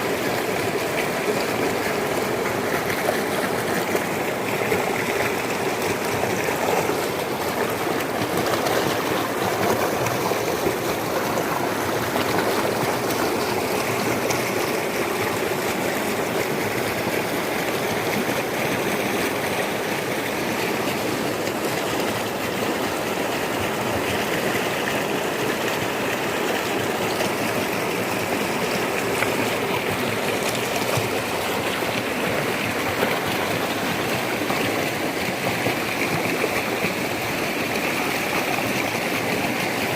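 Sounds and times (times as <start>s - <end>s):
floodwater rushing: 0.0s - 39.9s.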